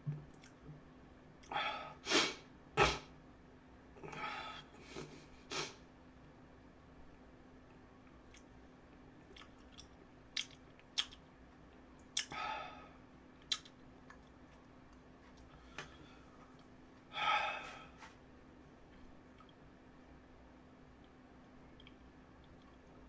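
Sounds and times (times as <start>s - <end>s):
person chewing with lip smacks: 0.3s - 0.6s, 9.3s - 11.3s, 12.1s - 12.3s, 13.4s - 16.7s
breathy bursts: 17.1s - 18.0s.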